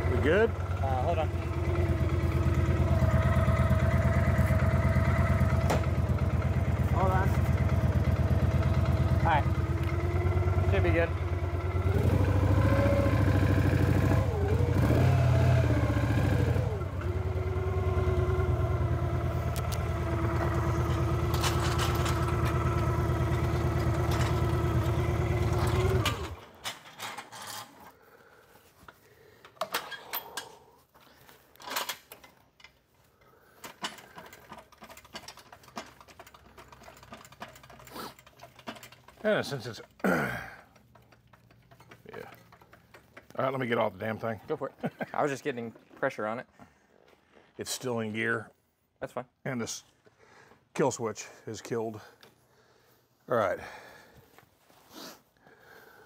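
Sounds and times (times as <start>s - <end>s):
motorcycle engine revving and idling: 0.0s - 26.4s
faint clicks and knocks: 40.6s - 43.4s.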